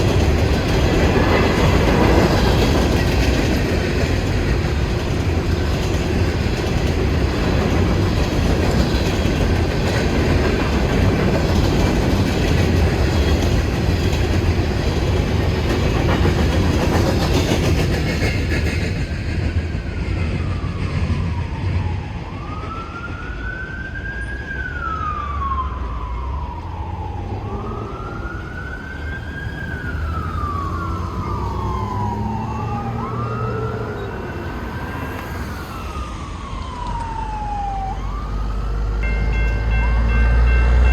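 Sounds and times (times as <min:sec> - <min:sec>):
freight train rail rumble: 0:00.0 - 0:37.9, 0:38.8 - 0:40.9
emergency siren wailing: 0:20.1 - 0:40.9.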